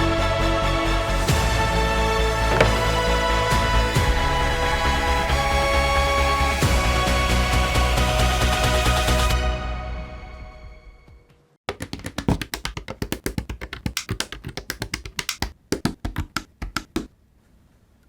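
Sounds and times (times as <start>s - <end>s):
sharp taps and clicks: 2.5s - 2.9s, 11.7s - 17.1s.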